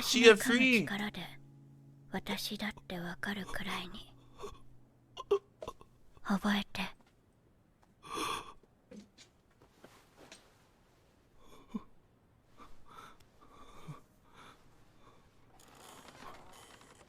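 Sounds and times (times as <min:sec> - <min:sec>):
person breathing: 0:12.5 - 0:15.4.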